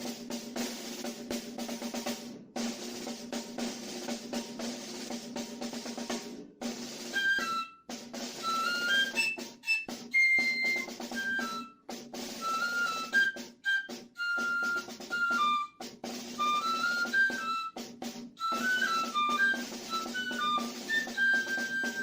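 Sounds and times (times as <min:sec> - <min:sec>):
light drum beat: 0:00.0 - 0:22.0
flute-like melody: 0:06.9 - 0:22.0.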